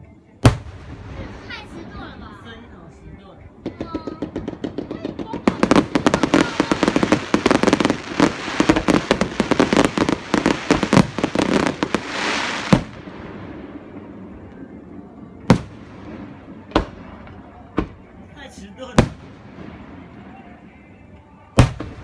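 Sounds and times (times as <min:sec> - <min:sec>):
fireworks crackling and banging: 0:00.4 - 0:22.0
firework rushing hiss: 0:03.7 - 0:14.0.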